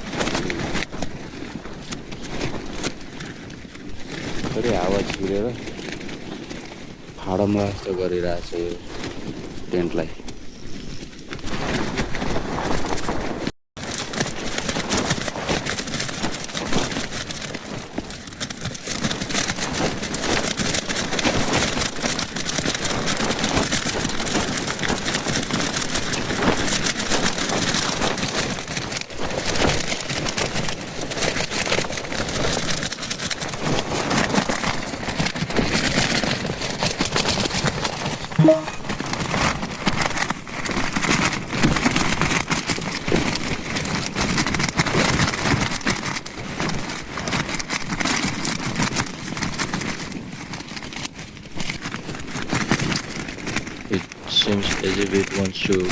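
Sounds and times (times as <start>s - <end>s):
tent fabric flapping in wind: 0.0s - 55.9s
brief higher sound: 38.4s - 38.8s.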